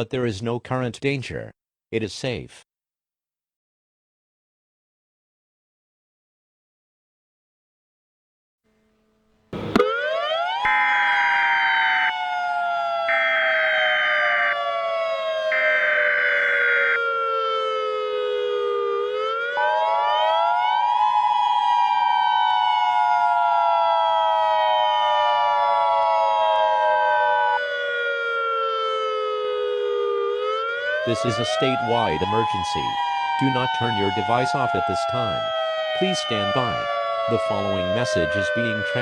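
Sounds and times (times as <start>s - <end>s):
civil defense siren winding: 8.7s - 39.0s
siren switch click: 9.6s - 12.2s
pulsed high alarm tones: 9.6s - 17.2s
two-tone attention signal: 10.7s - 12.1s.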